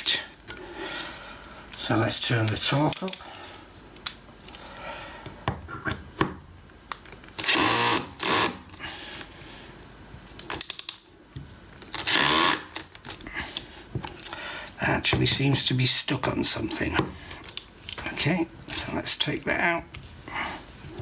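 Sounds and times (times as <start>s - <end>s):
electric screwdriver driving screw: 7.3s - 8.6s, 11.8s - 13.0s.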